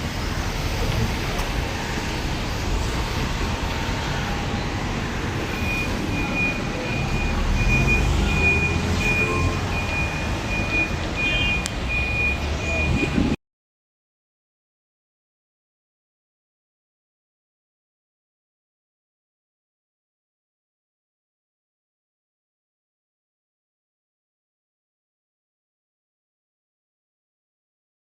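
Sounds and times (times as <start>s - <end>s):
road traffic rumble: 0.0s - 13.4s
reversing alarm beeps: 5.4s - 13.4s.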